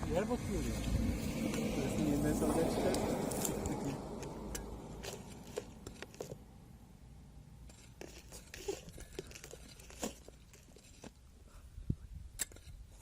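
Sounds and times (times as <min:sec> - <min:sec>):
soil and stones crunching: 0:00.8 - 0:06.5, 0:07.6 - 0:11.4.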